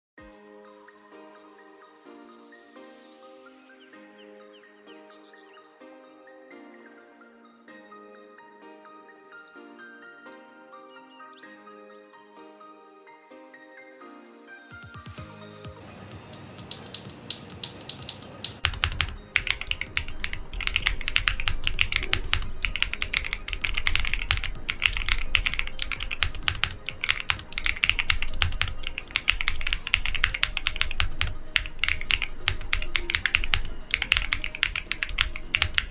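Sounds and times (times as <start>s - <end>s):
typing on mechanical keyboard: 16.1s - 35.9s.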